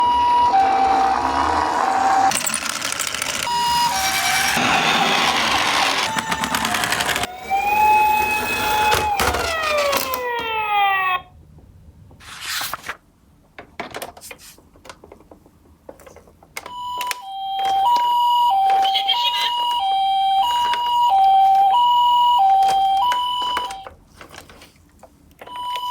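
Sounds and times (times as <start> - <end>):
two-tone hi-lo siren: 0.0 - 2.3, 3.5 - 11.3, 16.8 - 23.9
ambulance siren: 0.0 - 2.4, 3.3 - 11.3, 16.7 - 23.9, 25.4 - 25.9
toy cars rolling and rattling: 0.1 - 11.1, 13.8 - 25.9.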